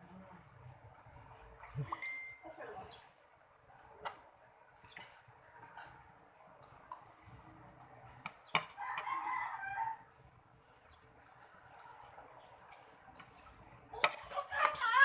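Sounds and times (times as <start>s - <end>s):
faint rooster crowing: 8.6s - 10.2s.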